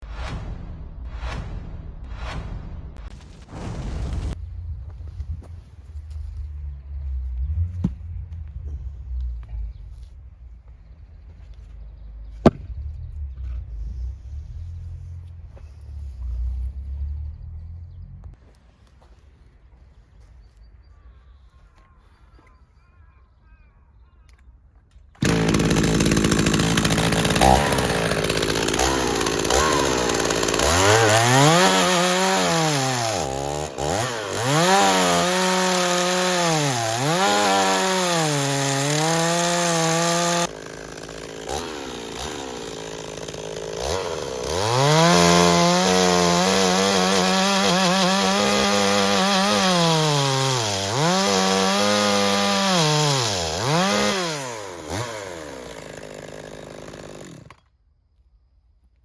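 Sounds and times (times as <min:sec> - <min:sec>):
chainsaw cutting wood: 0:12.4 - 0:14.4, 0:25.2 - 0:57.7.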